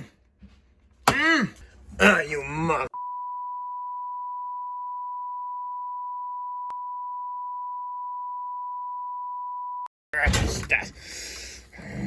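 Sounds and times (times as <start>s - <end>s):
censor bleep tone: 3.0s - 9.9s.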